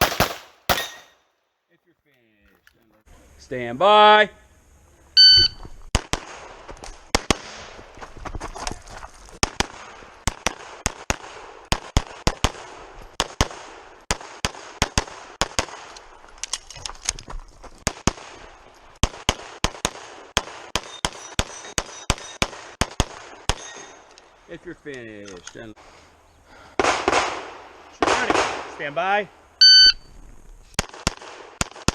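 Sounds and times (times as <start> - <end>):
rapid pistol fire: 0.0 - 1.1, 5.9 - 7.7, 26.8 - 28.7, 30.8 - 31.9
steel targets ringing: 0.0 - 1.2.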